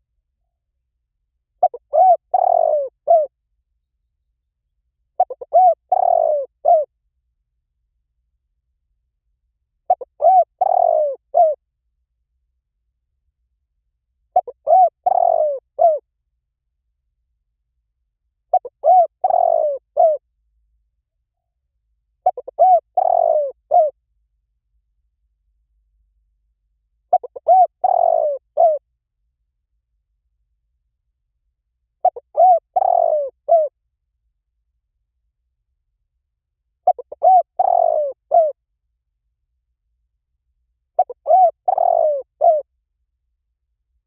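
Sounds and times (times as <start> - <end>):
dove cooing: 1.6 - 3.3, 5.2 - 6.9, 9.9 - 11.6, 14.4 - 16.0, 18.5 - 20.2, 22.2 - 24.0, 27.1 - 28.8, 32.0 - 33.7, 36.8 - 38.6, 41.0 - 42.6.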